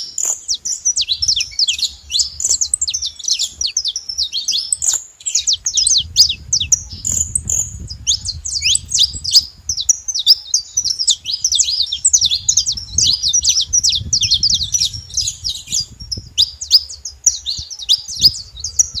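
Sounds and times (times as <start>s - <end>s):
finch singing high chirps: 0.0s - 19.0s.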